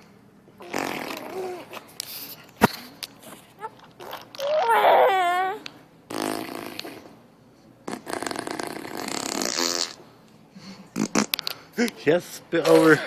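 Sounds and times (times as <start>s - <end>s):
person blowing raspberries: 0.6s - 2.8s, 6.1s - 7.2s, 7.8s - 10.0s, 10.9s - 11.5s.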